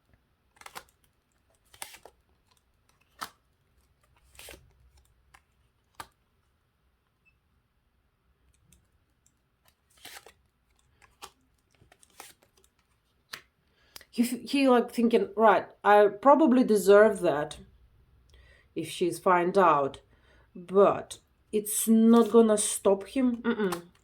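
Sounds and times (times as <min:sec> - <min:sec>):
cards snapping and rustling: 0:00.4 - 0:06.2, 0:08.5 - 0:14.0, 0:22.1 - 0:24.0.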